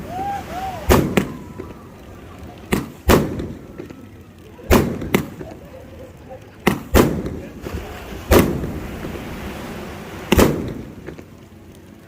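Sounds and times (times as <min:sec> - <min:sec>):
firework bangs with rumbling tail: 0:00.9 - 0:01.8, 0:02.7 - 0:03.8, 0:04.7 - 0:05.5, 0:06.6 - 0:09.2, 0:10.2 - 0:11.2.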